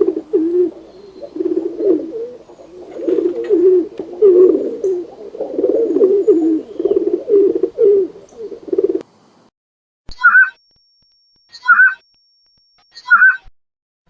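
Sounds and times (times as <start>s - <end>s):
pigeon cooing: 0.0s - 9.0s.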